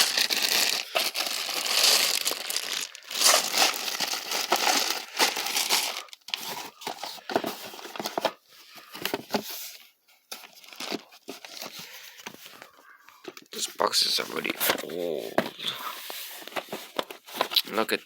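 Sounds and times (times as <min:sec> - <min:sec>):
plastic packaging crinkling: 0:00.0 - 0:09.4, 0:10.3 - 0:13.4.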